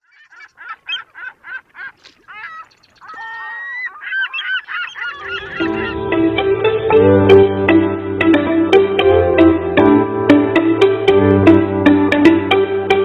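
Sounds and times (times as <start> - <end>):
birds honking calls: 0.0 - 6.6
plucked string music: 5.2 - 13.0.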